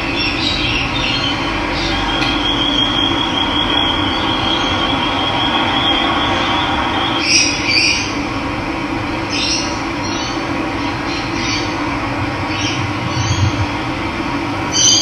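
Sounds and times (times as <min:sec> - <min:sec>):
harsh bird calls: 0:00.0 - 0:08.2, 0:14.6 - 0:15.0.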